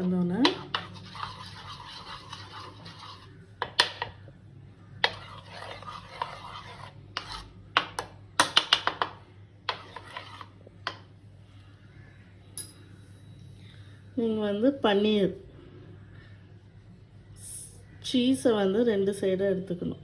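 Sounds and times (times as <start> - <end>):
spoon stirring thick batter: 0.0 - 11.1.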